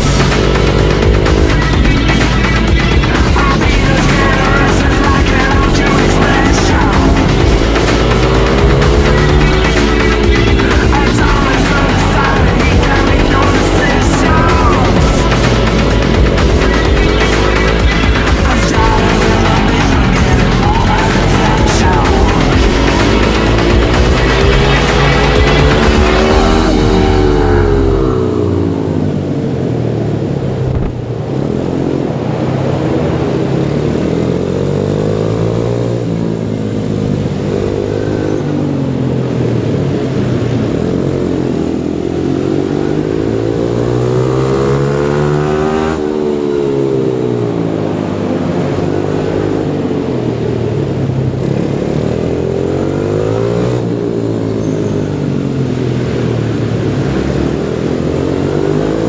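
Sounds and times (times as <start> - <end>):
pit bike engine revving: 0.0 - 32.1, 33.3 - 59.0.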